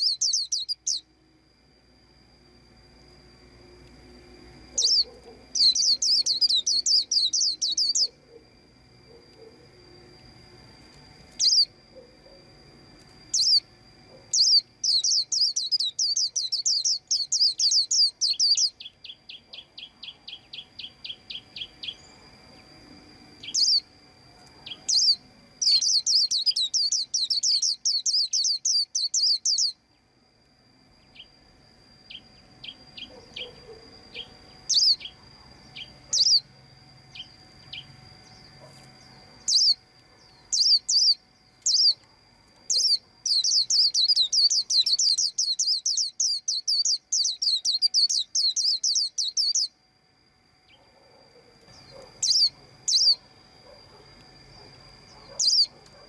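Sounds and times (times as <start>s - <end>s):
bird twittering: 0.0s - 1.1s, 4.7s - 8.4s, 11.4s - 12.4s, 13.3s - 22.2s, 23.4s - 23.9s, 24.6s - 29.8s, 32.1s - 36.5s, 39.4s - 42.0s, 42.7s - 49.8s, 51.7s - 53.3s, 55.1s - 55.8s
sharp bird calls: 0.0s - 1.1s, 4.7s - 8.4s, 11.4s - 12.4s, 13.3s - 13.6s, 14.2s - 22.1s, 23.4s - 23.8s, 24.7s - 29.8s, 32.1s - 35.2s, 35.8s - 36.4s, 39.4s - 42.0s, 42.7s - 49.7s, 51.7s - 53.2s, 55.1s - 55.8s.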